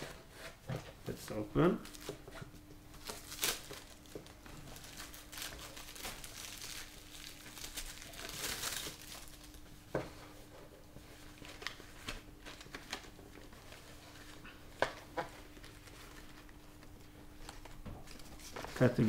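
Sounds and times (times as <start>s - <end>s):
packaging crinkling: 1.8s - 2.2s, 3.0s - 9.6s, 11.2s - 19.0s.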